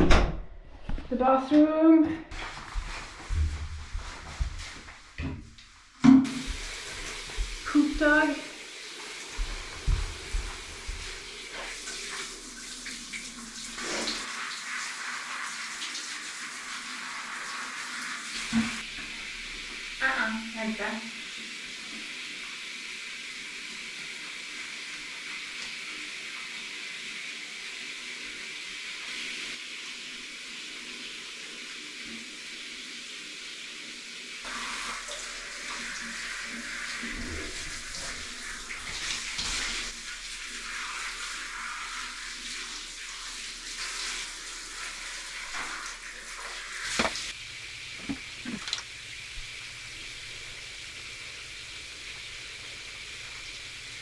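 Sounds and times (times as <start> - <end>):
running water hissing: 5.8 - 54.0
water splashing: 6.3 - 15.2, 34.5 - 47.4.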